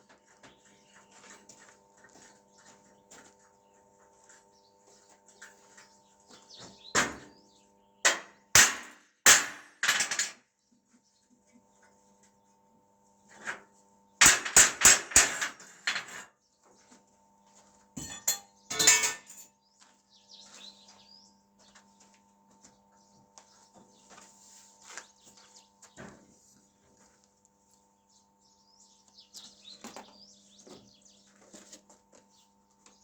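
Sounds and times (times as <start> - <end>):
sharp metal knocks and clanks: 8.1 - 10.4, 14.2 - 16.3, 18.0 - 19.5.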